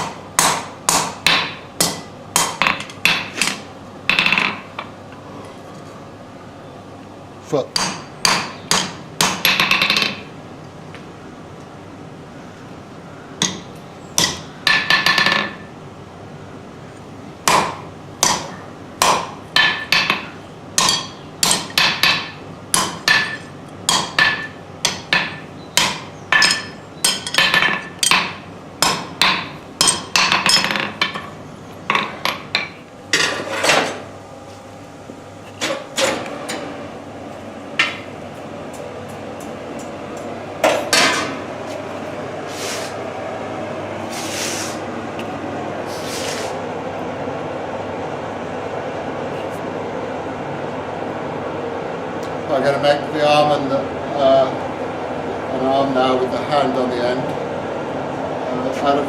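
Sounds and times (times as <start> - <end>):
hammer striking anvil: 0.0 - 4.6, 7.8 - 10.2, 13.4 - 15.6, 17.5 - 31.3.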